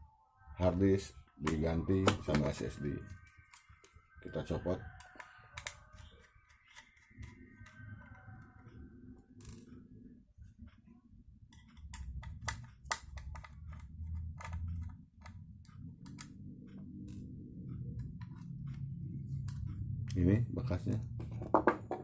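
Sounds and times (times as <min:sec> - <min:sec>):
clicks of laptop parts handled: 0:11.6 - 0:13.8.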